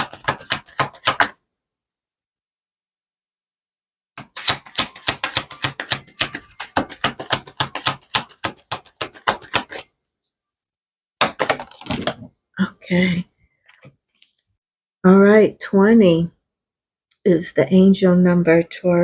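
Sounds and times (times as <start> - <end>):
cards being shuffled: 0.0 - 1.4, 4.2 - 9.9.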